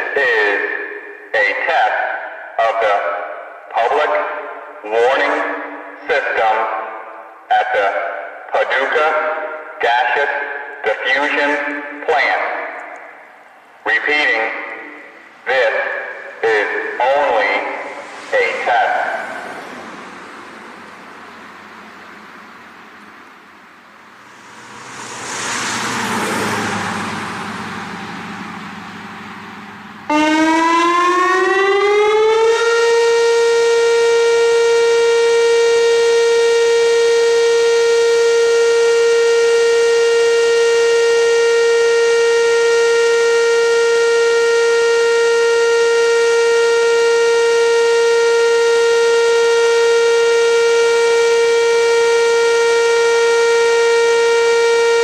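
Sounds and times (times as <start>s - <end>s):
electronic siren: 0.0s - 55.0s
rushing noise: 14.5s - 30.1s.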